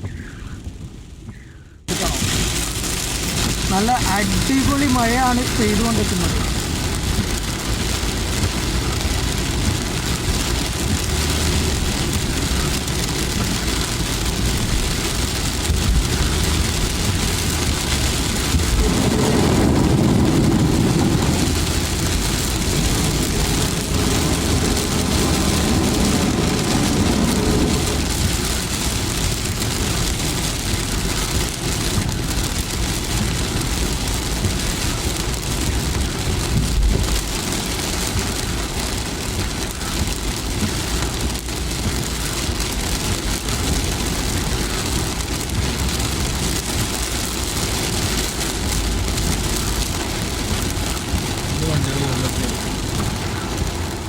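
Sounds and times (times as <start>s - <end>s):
heavy rain on a car: 0.0s - 54.0s
vehicle engine and road noise: 0.0s - 54.0s
low rushing noise: 15.5s - 31.2s.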